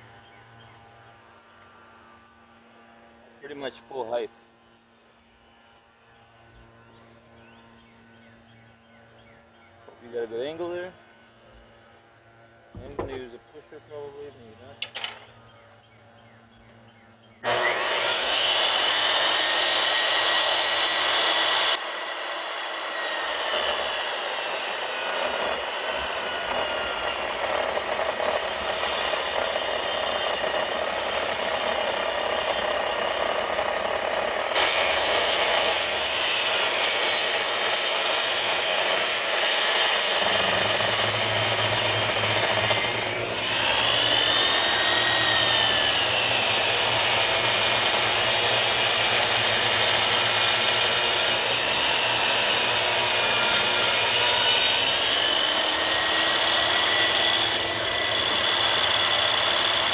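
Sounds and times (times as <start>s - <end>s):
table saw whine cutting wood: 12.8s - 15.4s, 17.4s - 59.9s.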